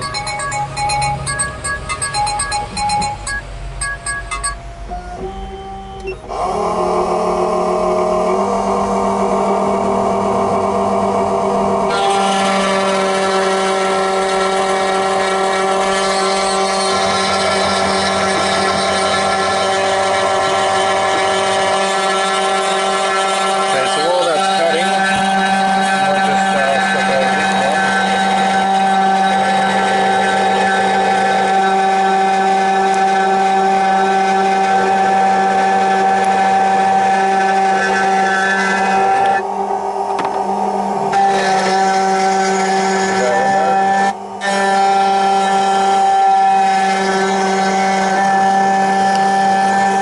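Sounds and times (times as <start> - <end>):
key cutting machine humming: 0.0 - 10.5
key cutting machine whine: 0.0 - 50.0.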